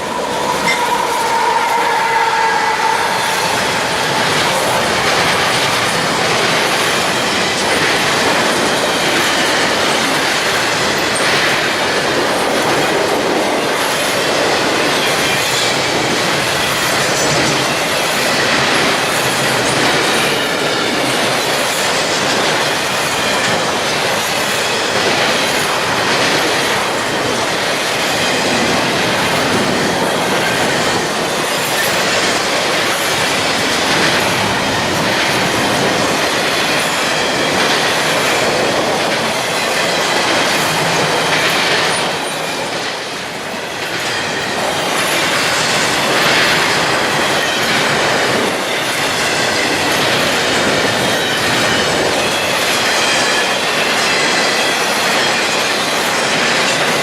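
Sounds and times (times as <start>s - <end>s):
high-pitched wheel squeal: 0.0s - 4.8s
steel wheels on rail: 0.0s - 57.0s.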